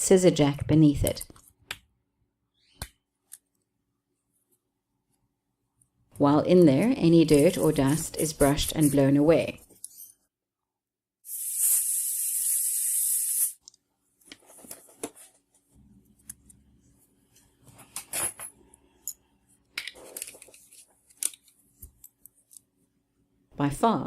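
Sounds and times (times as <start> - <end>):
compressed air blast: 11.3 - 13.6.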